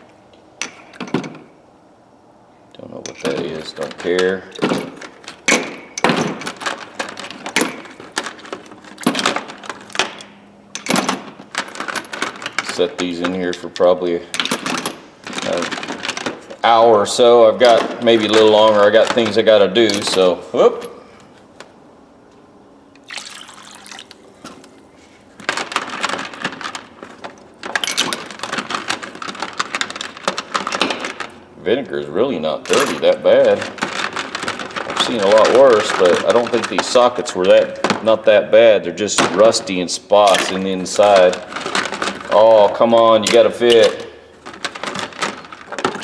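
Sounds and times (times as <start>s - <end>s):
metal sockets clinking: 3.0s - 16.8s, 25.4s - 31.4s, 40.2s - 46.0s
liquid pouring and splashing: 23.0s - 24.3s.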